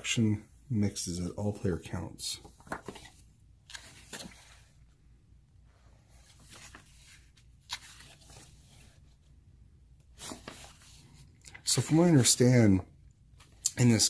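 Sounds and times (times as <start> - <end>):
paper and cardboard rustling: 2.4 - 4.8, 6.0 - 9.2, 10.1 - 11.9.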